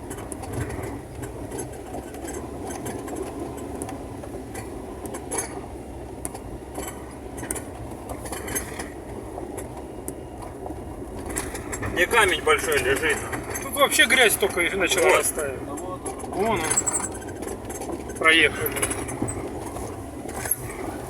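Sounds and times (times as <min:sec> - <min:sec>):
engine and road rumble: 0:00.0 - 0:21.0
clinks and rattles: 0:06.7 - 0:10.5, 0:11.2 - 0:21.0.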